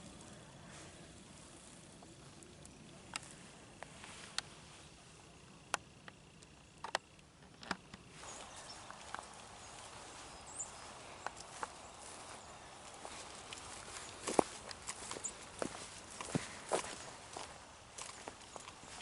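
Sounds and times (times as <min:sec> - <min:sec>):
sharp clicks and snaps: 0:05.7 - 0:08.0
footsteps in leaves: 0:08.1 - 0:19.0.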